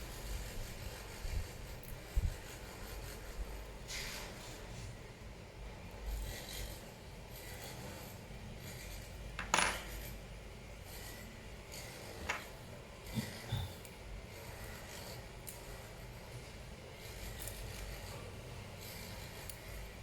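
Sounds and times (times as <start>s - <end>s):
small parts and tools handled: 9.4s - 10.1s.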